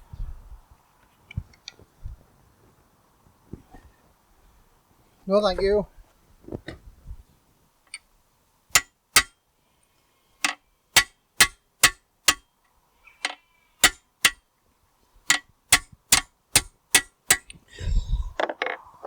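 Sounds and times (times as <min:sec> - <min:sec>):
hammer blows on steel: 0:08.7 - 0:09.4, 0:10.4 - 0:12.5, 0:13.8 - 0:14.4, 0:15.3 - 0:17.6.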